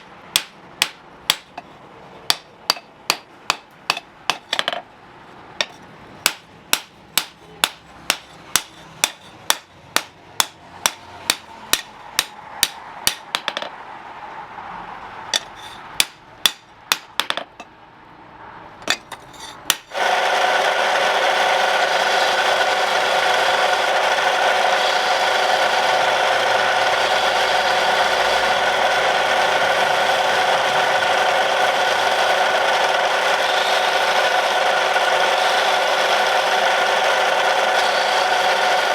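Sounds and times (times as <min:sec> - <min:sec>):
hammer striking steel on anvil: 0:00.0 - 0:01.7, 0:02.3 - 0:04.8, 0:05.6 - 0:13.7, 0:15.4 - 0:17.7
power grinder whining: 0:19.9 - 0:38.9.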